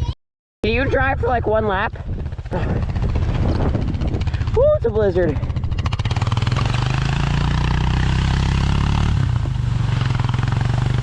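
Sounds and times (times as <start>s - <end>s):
wind on microphone: 0.6s - 6.7s
small vehicle engine running: 2.0s - 11.0s.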